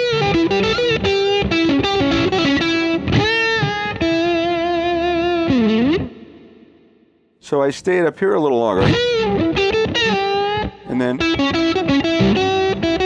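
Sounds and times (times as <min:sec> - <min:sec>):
electric guitar blues lick: 0:00.0 - 0:07.0, 0:08.6 - 0:13.0.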